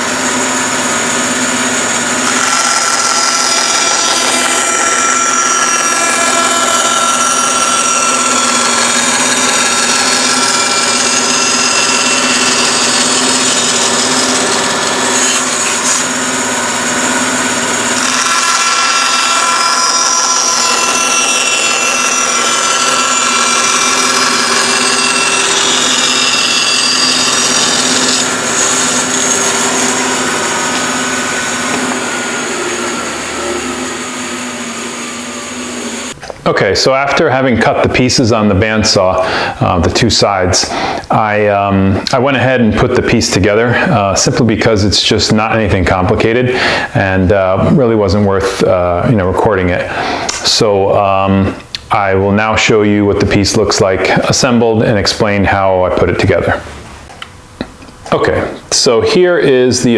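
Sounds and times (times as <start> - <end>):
bandsaw cutting wood: 0.0 - 56.6.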